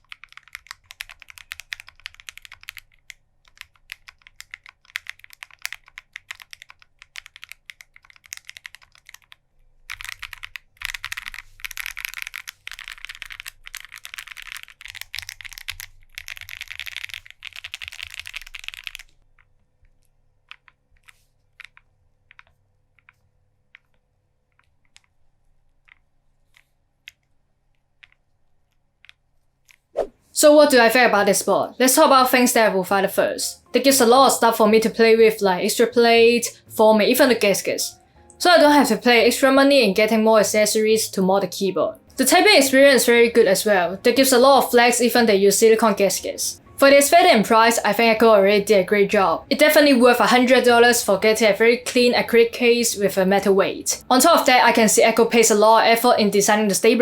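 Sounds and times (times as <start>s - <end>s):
mechanical keyboard typing: 0.0s - 29.8s.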